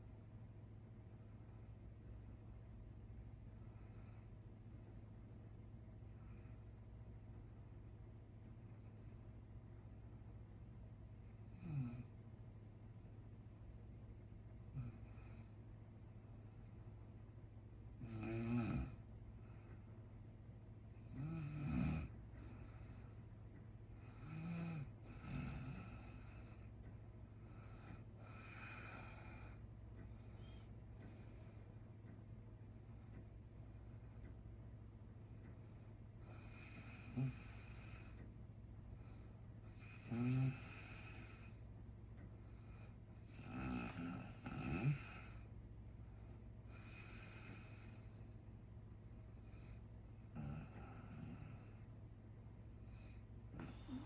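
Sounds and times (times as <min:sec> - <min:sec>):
steady low hum: 0:00.0 - 0:54.0
quiet breathing: 0:00.8 - 0:54.0
man snoring: 0:11.5 - 0:12.1, 0:14.7 - 0:15.5, 0:18.0 - 0:19.0, 0:20.9 - 0:23.1, 0:24.0 - 0:26.7, 0:28.2 - 0:29.6, 0:36.2 - 0:38.2, 0:39.6 - 0:41.6, 0:43.1 - 0:45.5, 0:46.6 - 0:48.3, 0:50.2 - 0:51.9, 0:52.9 - 0:54.0.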